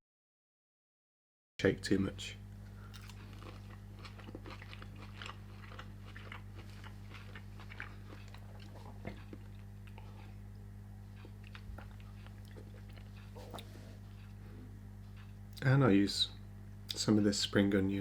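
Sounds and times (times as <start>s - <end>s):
low electrical hum: 1.6s - 18.0s
person chewing crunchy food: 2.7s - 14.4s.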